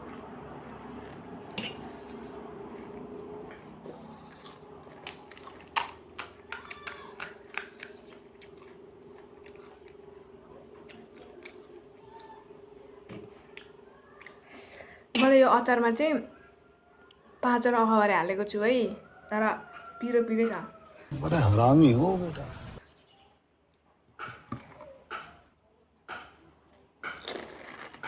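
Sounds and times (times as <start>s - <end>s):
wet chewing: 0.0s - 14.6s.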